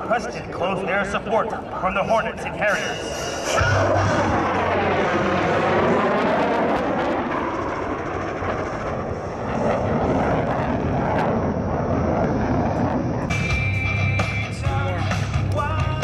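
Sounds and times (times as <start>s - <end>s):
jet flying past roaring: 0.0s - 15.5s.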